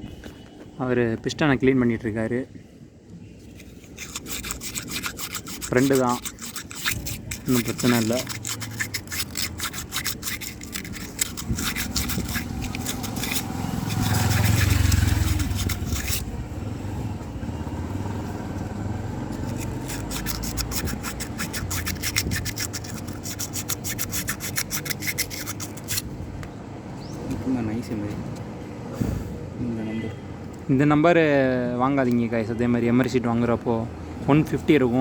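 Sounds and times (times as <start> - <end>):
sandpaper scraping metal: 3.4 - 16.4, 19.4 - 26.1.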